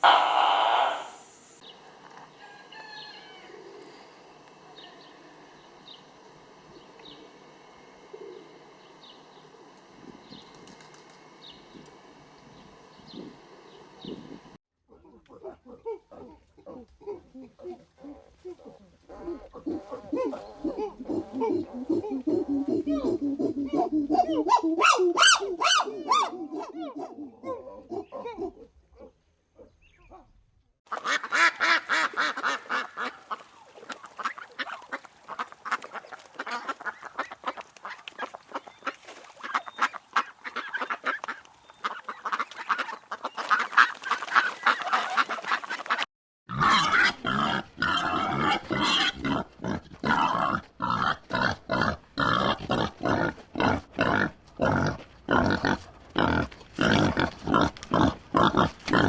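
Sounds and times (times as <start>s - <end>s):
pigs grunting: 0.0s - 1.6s, 46.5s - 59.0s
waterfowl honking and quacking: 0.0s - 1.6s, 30.9s - 46.0s.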